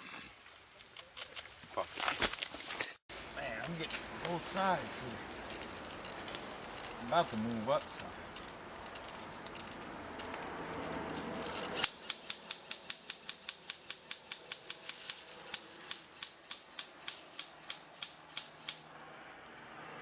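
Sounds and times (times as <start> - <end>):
rustling: 0.0 - 12.1, 14.4 - 17.6.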